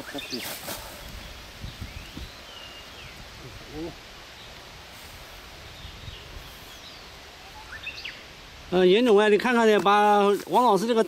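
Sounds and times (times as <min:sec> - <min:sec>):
rustling: 0:00.0 - 0:01.2.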